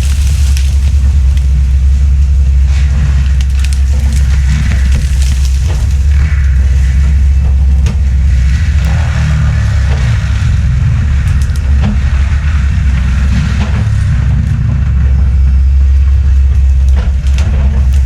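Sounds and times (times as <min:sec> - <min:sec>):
sharp cracks: 0:00.0 - 0:02.3, 0:02.9 - 0:14.0
heavy diesel machine running: 0:00.0 - 0:18.0.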